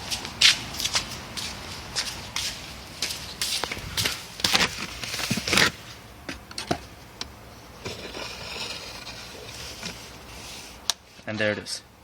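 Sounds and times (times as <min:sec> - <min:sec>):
wire scraping through grommet: 0:07.8 - 0:11.0.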